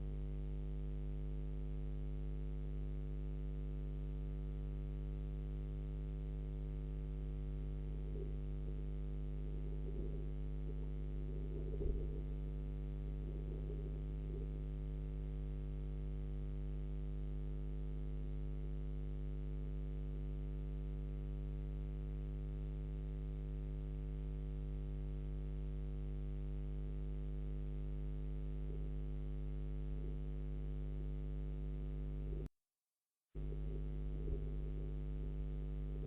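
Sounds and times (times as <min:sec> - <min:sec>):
electrical hum: 0:00.0 - 0:32.5, 0:33.4 - 0:36.0
deep low drone: 0:06.2 - 0:15.3, 0:33.4 - 0:36.0.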